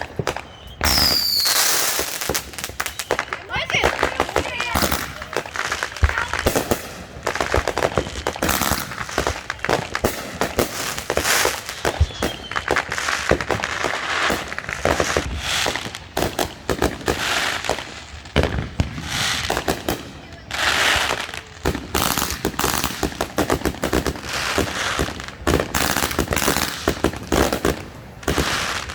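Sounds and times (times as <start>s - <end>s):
firework rising whistle: 0.0s - 3.4s, 11.1s - 13.1s
fireworks bangs and crackles: 0.0s - 28.9s.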